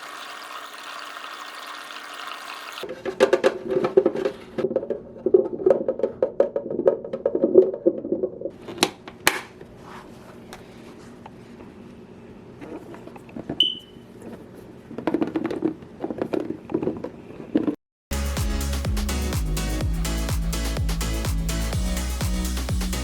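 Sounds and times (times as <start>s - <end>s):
objects tapping and knocking: 2.8s - 9.5s
short high beep: 13.6s - 14.0s
music with steady beat: 18.1s - 23.0s.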